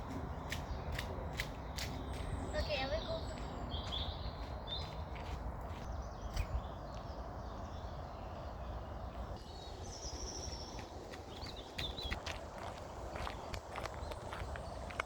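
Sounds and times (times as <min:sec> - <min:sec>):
bird chirps: 0:00.1 - 0:15.0
footsteps on muddy path: 0:03.0 - 0:06.0, 0:10.6 - 0:15.0.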